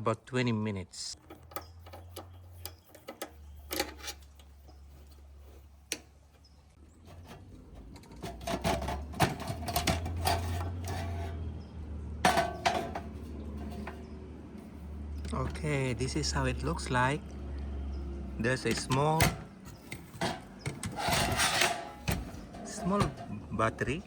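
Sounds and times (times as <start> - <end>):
low steady hum: 0.0 - 24.0
hard objects clattering: 6.4 - 14.4, 18.5 - 24.0.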